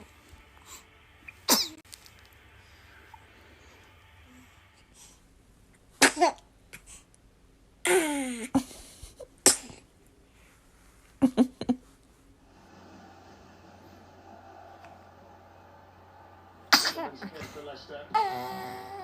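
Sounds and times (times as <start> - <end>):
baby sneezing: 1.5 - 1.8, 6.0 - 6.5, 9.4 - 9.9, 16.7 - 17.2.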